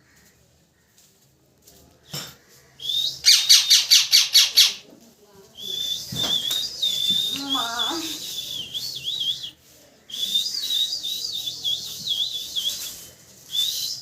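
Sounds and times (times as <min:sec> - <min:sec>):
parrot whistling: 0:03.0 - 0:04.8
parrot chirping: 0:03.2 - 0:04.8.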